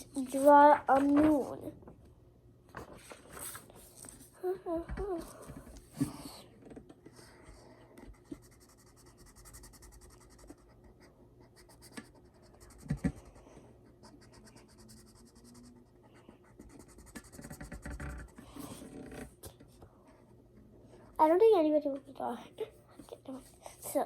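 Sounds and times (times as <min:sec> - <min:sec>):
pencil scratching on paper: 0:07.1 - 0:19.1.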